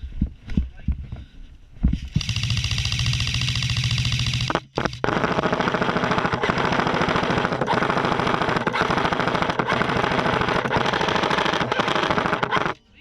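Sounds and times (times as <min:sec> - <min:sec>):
airsoft gun rapid firing: 0:02.1 - 0:12.8.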